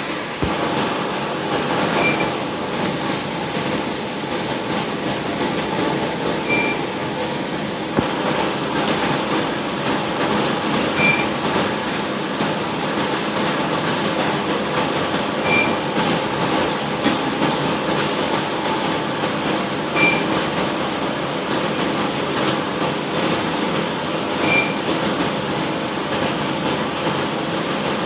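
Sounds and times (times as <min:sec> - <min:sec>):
coffee roaster rattling rush: 0:00.0 - 0:28.0.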